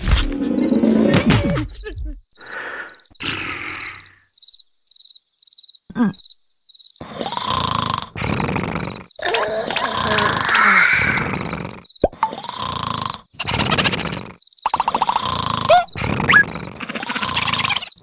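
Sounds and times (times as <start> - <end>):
crickets chirping: 0.0 - 18.0
cartoon vocal noises and grunts: 0.8 - 2.2, 5.9 - 6.3, 9.2 - 11.4, 14.8 - 18.0.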